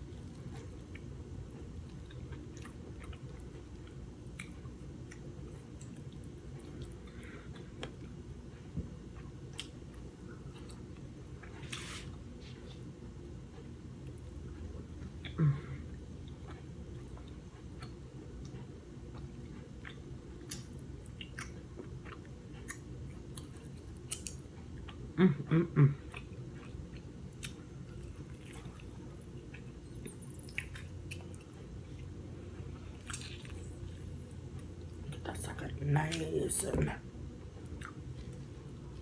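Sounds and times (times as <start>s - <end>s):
chewing crab legs: 26.0s - 32.1s, 32.8s - 35.2s.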